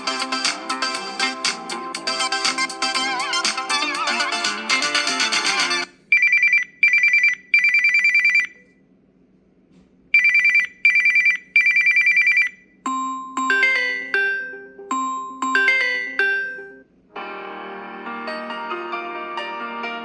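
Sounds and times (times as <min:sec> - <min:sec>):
ringtone tune: 0:00.0 - 0:08.6, 0:10.2 - 0:16.9
electronic telephone bell ringtone: 0:10.2 - 0:16.8
chiming ringtone: 0:10.2 - 0:16.9.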